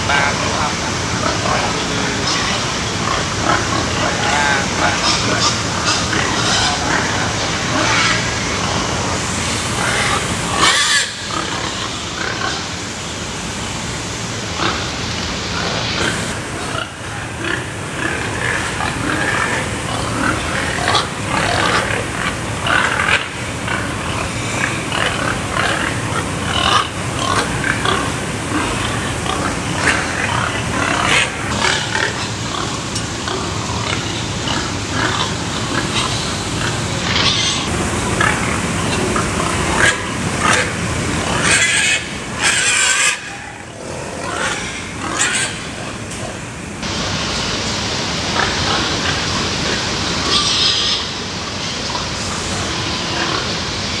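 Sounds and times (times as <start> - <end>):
pigs grunting and squealing: 0.0 - 47.0, 48.2 - 54.0.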